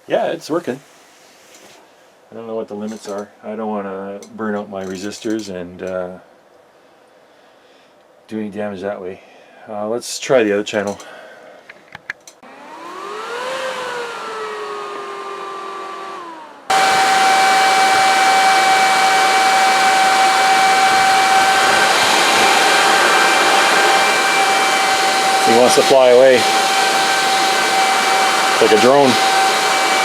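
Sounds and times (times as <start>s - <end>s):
cooling fan whining: 12.3s - 30.0s.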